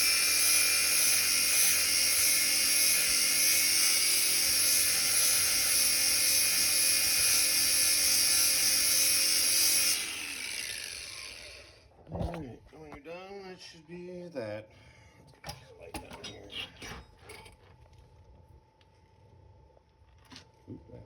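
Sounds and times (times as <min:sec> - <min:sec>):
power grinder grinding steel: 0:00.0 - 0:11.9.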